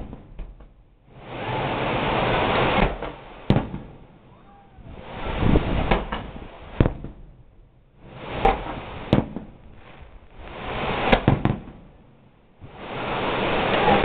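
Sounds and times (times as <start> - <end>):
fireworks bursting bangs: 0.0 - 14.0
rushing noise: 1.2 - 3.4, 9.8 - 11.3, 12.6 - 14.0.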